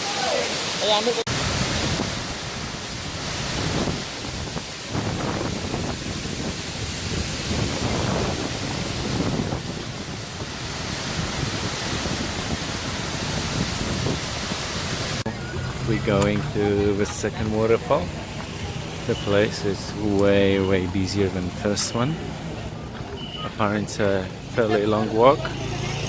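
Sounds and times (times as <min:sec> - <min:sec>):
waterfall rushing: 0:00.0 - 0:26.0
low wind rumble on microphone: 0:01.3 - 0:16.7.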